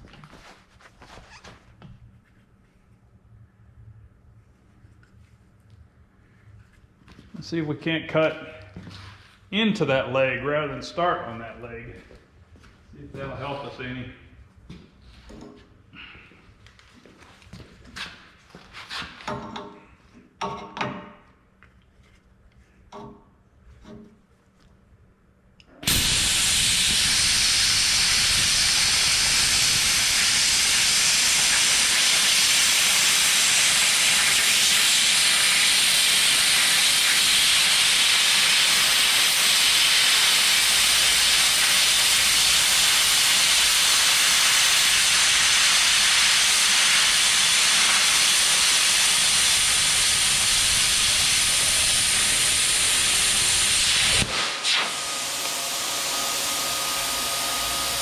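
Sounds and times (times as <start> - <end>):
plasma cutter hissing: 25.8 - 58.0.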